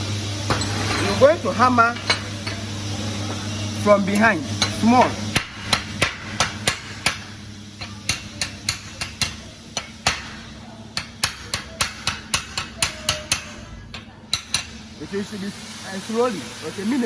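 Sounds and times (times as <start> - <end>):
hammer tapping on steel plates: 4.6 - 14.8.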